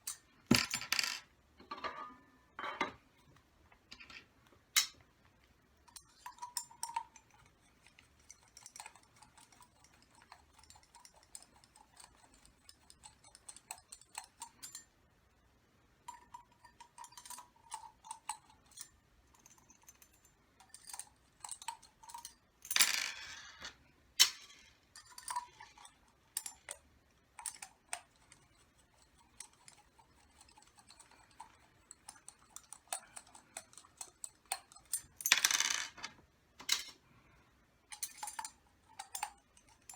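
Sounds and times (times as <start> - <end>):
metal parts and tools clinking: 32.0 - 37.0, 37.9 - 39.9.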